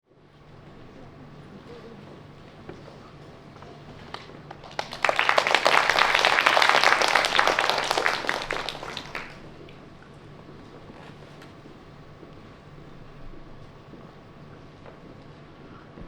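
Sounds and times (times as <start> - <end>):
audience applauding: 4.5 - 9.4.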